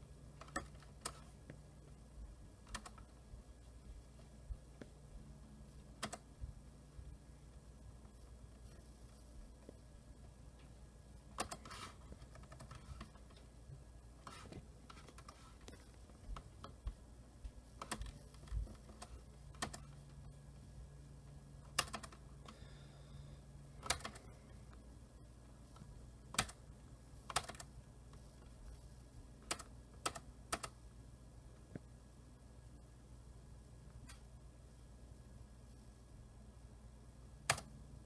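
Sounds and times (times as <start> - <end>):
low steady hum: 0.0 - 38.0
computer keyboard key clicks: 23.8 - 24.2.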